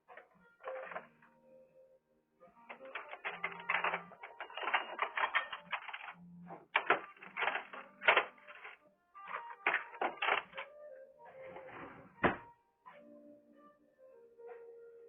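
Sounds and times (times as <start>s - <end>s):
metal utensils clattering: 2.7s - 10.6s.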